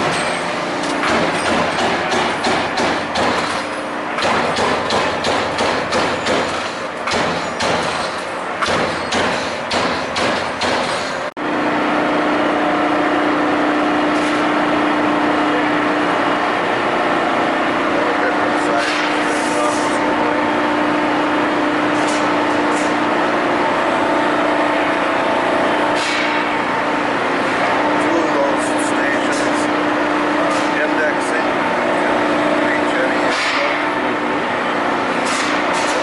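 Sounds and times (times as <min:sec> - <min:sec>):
punch press hitting sheet metal: 0:00.0 - 0:11.3, 0:18.6 - 0:20.2, 0:25.9 - 0:26.8, 0:33.0 - 0:34.0, 0:35.2 - 0:36.0
press running hum: 0:00.0 - 0:36.0.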